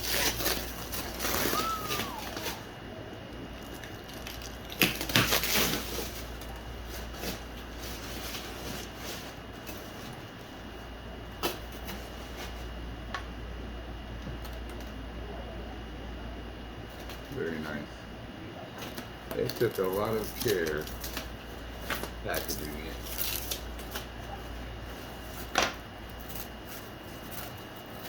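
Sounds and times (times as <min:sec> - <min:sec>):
packing materials rustling: 0:00.0 - 0:02.8, 0:18.8 - 0:28.0.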